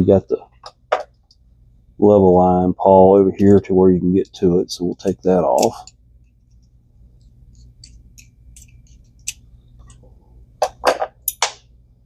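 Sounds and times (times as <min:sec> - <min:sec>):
small metal parts clicking: 0:07.6 - 0:10.0, 0:11.2 - 0:11.6.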